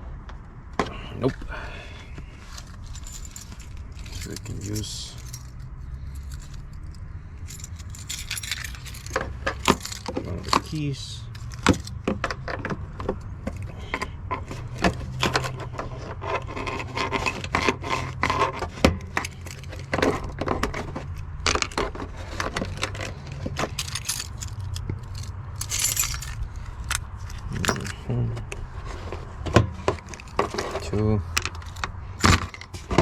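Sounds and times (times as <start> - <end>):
car key scraping against plastic: 2.5 - 12.5, 13.1 - 33.0
key ring jangling: 2.7 - 12.0, 19.1 - 19.8, 23.6 - 28.1, 30.0 - 32.7.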